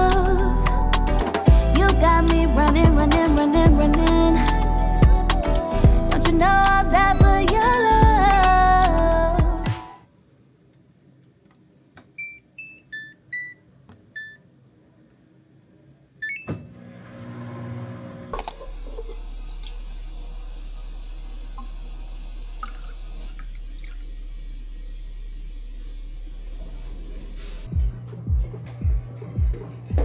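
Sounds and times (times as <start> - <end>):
control panel beeps: 12.2 - 13.6, 14.2 - 14.4
washing machine humming: 16.7 - 30.0
water running in: 18.4 - 27.4.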